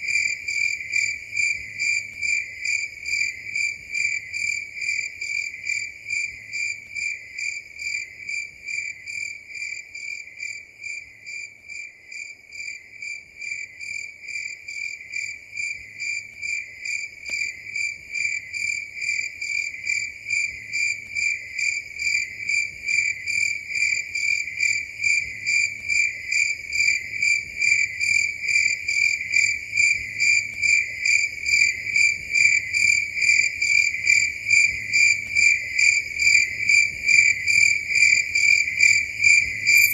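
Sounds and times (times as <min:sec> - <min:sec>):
cricket chirping: 0:00.0 - 0:39.9.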